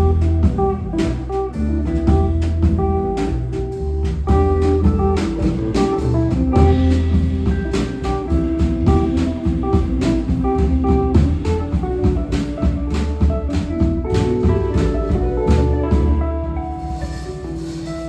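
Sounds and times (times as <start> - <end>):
bass line: 0.0 - 18.0
plucked guitar notes: 0.0 - 18.0
drum and cymbal strokes: 4.4 - 18.0.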